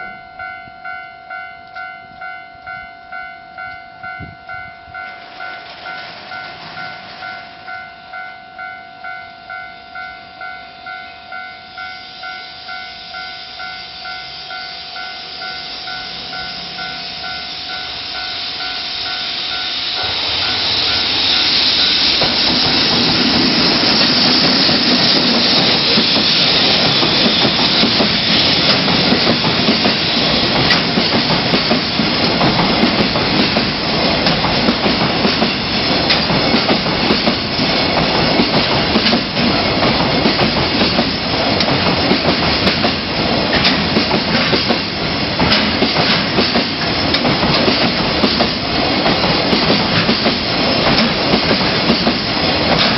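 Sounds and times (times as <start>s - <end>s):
level crossing warning bell: 0.0s - 21.5s
freight train rumbling over rails: 0.0s - 52.9s.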